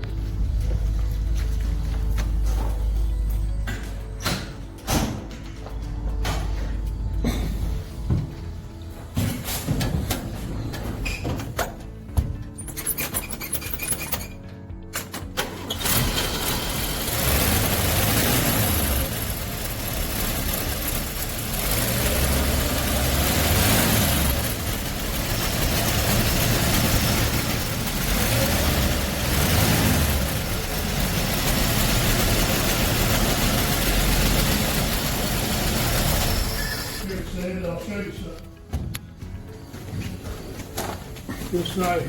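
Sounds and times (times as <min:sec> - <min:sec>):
truck engine starting and running: 0:00.0 - 0:42.0.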